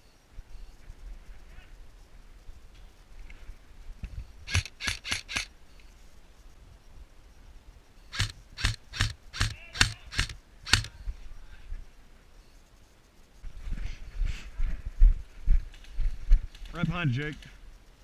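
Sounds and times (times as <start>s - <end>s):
airsoft gun shots: 8.1s - 10.9s.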